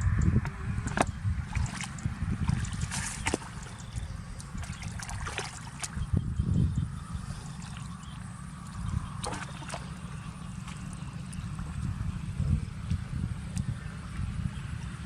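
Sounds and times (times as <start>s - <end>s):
steady low rumble: 0.0s - 15.0s
water splashing and dripping: 0.4s - 6.1s, 7.5s - 11.9s.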